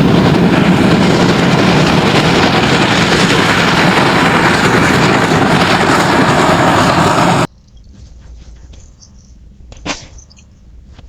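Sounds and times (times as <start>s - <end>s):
loud steady rushing noise: 0.0s - 7.5s.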